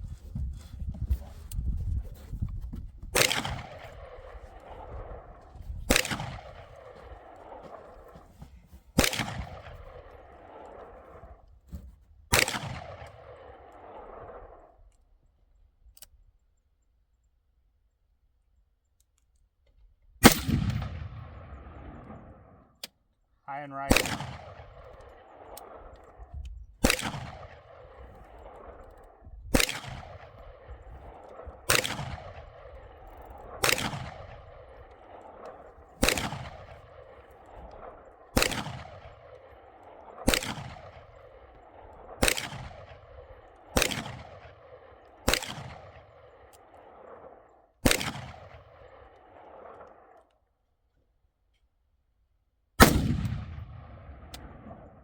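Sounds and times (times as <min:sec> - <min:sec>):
rifle shots echoing: 0:03.2 - 0:08.2, 0:09.0 - 0:11.3, 0:12.3 - 0:14.6, 0:20.2 - 0:22.7, 0:23.6 - 0:50.2, 0:52.8 - 0:55.0.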